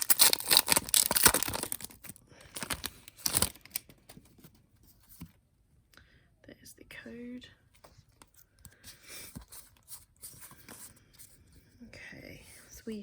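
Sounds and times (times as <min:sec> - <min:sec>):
foil wrapper tearing and crinkling: 0:00.0 - 0:03.9.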